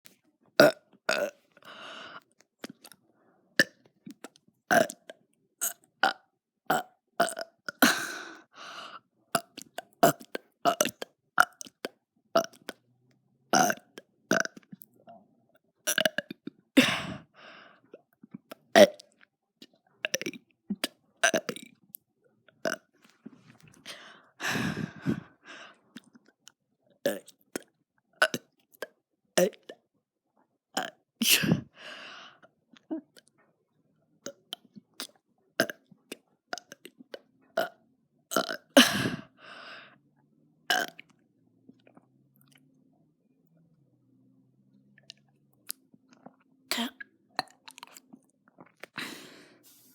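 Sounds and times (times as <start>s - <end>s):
person burping: 0.6s - 1.4s, 4.7s - 5.0s, 5.6s - 8.4s, 13.6s - 14.6s, 23.8s - 25.6s, 38.3s - 39.4s, 46.7s - 47.6s.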